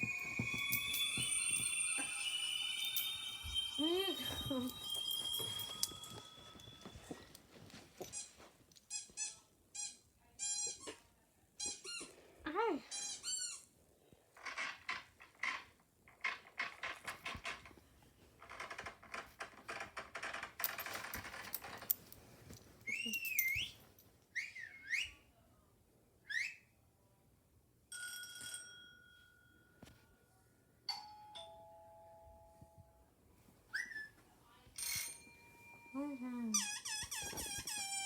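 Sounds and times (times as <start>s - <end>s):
wavy sliding whistles: 0.0s - 4.7s
steady electronic beep: 0.0s - 6.6s
doorbell chime: 0.0s - 7.5s, 27.9s - 30.0s, 30.9s - 32.9s, 34.8s - 36.5s.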